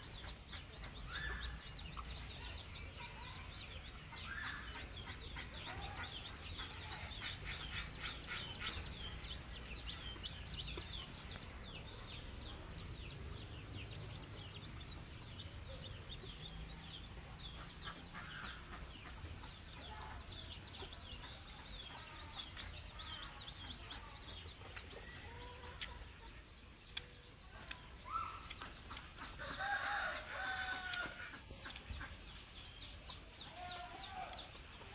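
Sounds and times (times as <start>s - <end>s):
chickens clucking: 0.0s - 34.9s
rooster crowing: 29.5s - 31.2s.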